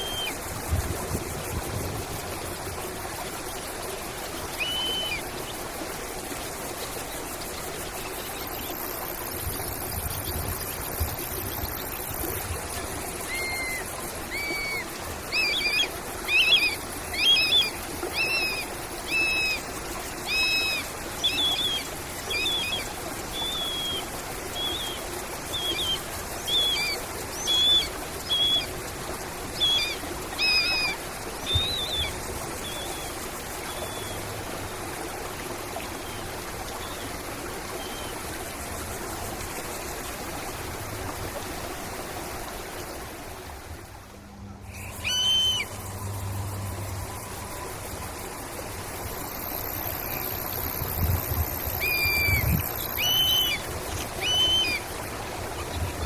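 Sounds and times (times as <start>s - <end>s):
trickle of running water: 0.0s - 56.0s
songbird whistling: 4.6s - 5.2s, 44.7s - 45.8s, 51.8s - 53.6s, 54.2s - 54.8s.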